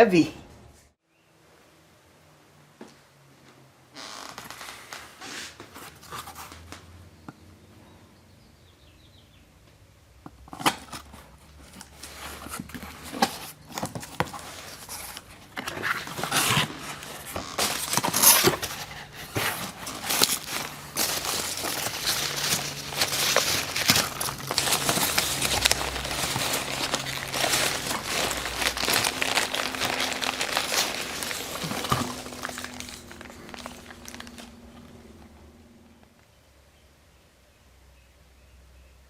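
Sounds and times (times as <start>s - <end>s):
objects and packaging handled: 4.4s - 6.9s, 10.3s - 35.4s.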